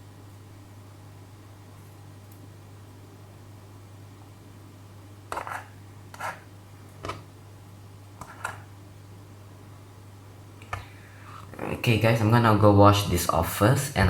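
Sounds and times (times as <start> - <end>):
steady low hum: 0.0 - 14.0
things scraping and knocking on table: 5.3 - 6.4, 8.2 - 8.7.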